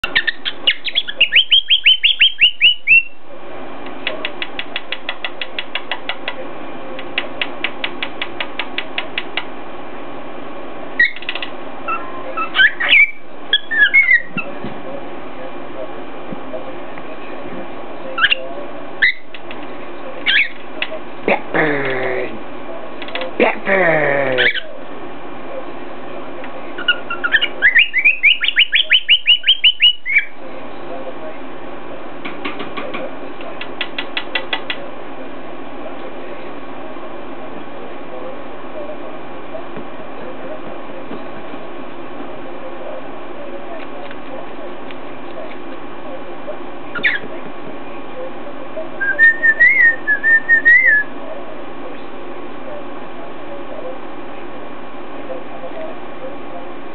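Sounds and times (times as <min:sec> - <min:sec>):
cockatiel chirping: 0:00.0 - 0:03.2, 0:11.9 - 0:14.5, 0:26.8 - 0:30.3, 0:47.0 - 0:47.2, 0:49.0 - 0:51.1.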